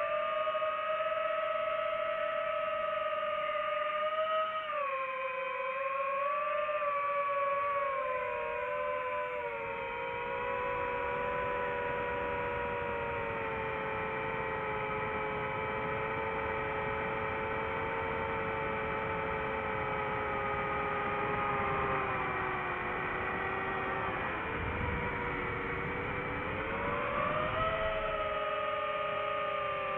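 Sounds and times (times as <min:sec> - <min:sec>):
drone electric motors whining: 0:07.9 - 0:29.9.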